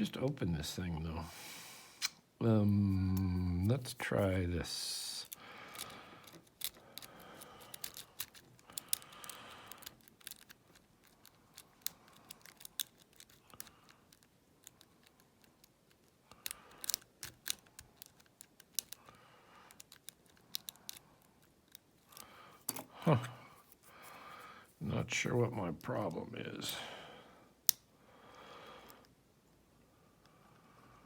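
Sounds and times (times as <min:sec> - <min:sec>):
lock pick clicking and scraping: 0:05.2 - 0:19.0, 0:19.7 - 0:22.9.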